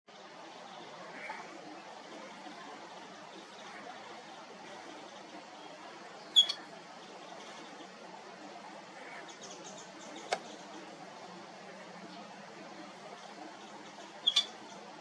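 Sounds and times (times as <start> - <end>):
low background murmur: 0.1 - 15.0
otter squeaking: 6.3 - 6.7.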